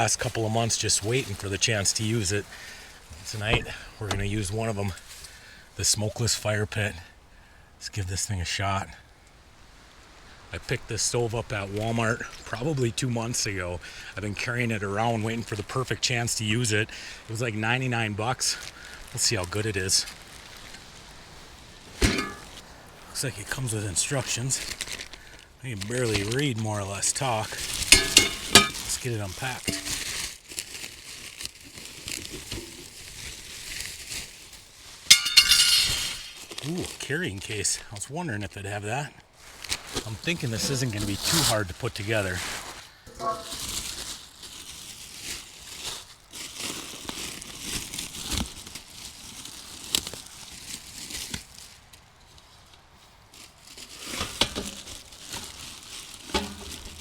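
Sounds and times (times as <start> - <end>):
packaging crinkling and rustling: 18.5 - 23.1, 24.0 - 35.1, 36.2 - 37.1, 39.4 - 57.0.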